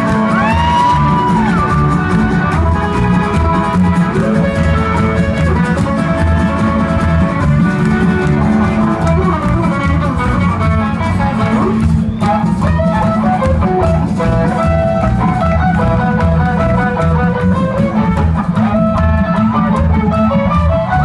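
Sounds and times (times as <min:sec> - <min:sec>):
bass and drum beat: 0:00.0 - 0:21.0
melodic guitar line: 0:00.0 - 0:21.0
rockabilly band playing: 0:00.0 - 0:21.0.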